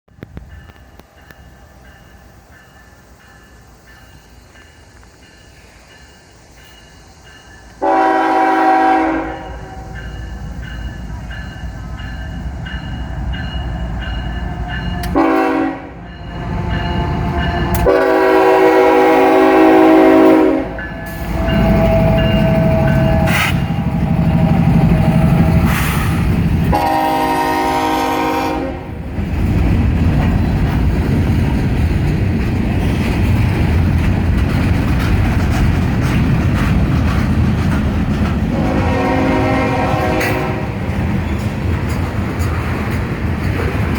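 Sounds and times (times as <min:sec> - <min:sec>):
diesel locomotive rumble: 0:00.1 - 0:43.9
train horn blasts: 0:07.8 - 0:10.2, 0:14.3 - 0:29.0, 0:38.5 - 0:40.8.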